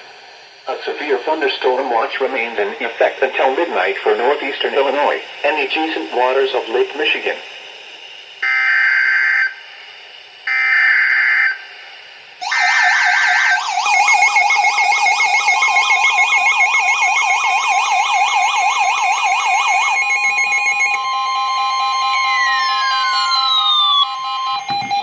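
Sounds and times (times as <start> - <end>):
steady attention tone: 0.0 - 25.0
warbling alert alarm: 8.4 - 9.6, 10.5 - 11.7, 12.4 - 25.0
screeching digital data bursts: 12.4 - 25.0.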